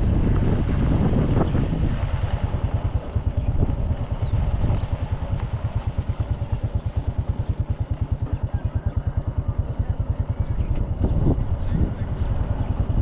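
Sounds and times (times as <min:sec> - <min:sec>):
engine puttering: 0:01.0 - 0:13.0.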